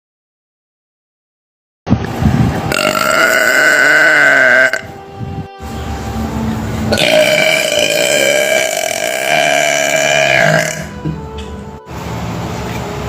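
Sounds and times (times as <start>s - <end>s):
woman burping: 2.7s - 4.9s, 6.9s - 11.0s.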